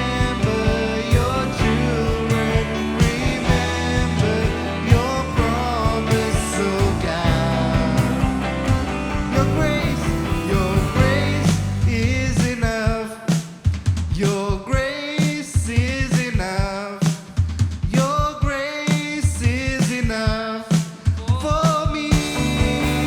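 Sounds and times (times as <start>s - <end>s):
bass: 0.0s - 12.8s, 22.1s - 23.0s
person singing: 0.0s - 13.4s, 21.4s - 23.0s
drums: 0.0s - 23.0s.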